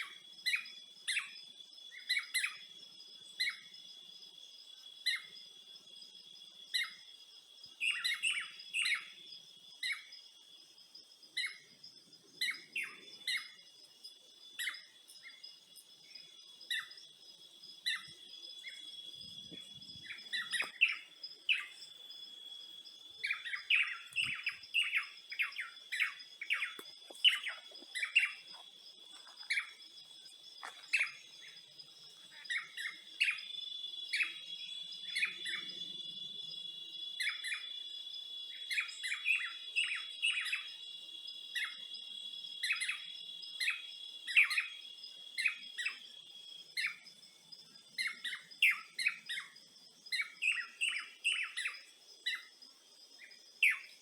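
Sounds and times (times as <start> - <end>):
high-pitched insect drone: 7.9 - 54.0
birds chirping: 11.3 - 46.1, 47.8 - 52.5.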